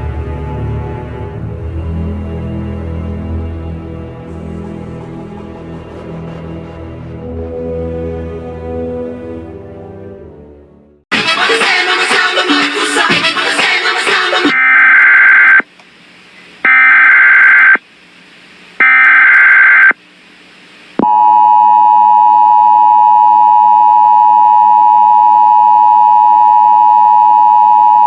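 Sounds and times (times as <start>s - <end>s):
long steady alert tone: 16.6s - 17.8s, 18.8s - 20.0s, 21.0s - 28.0s.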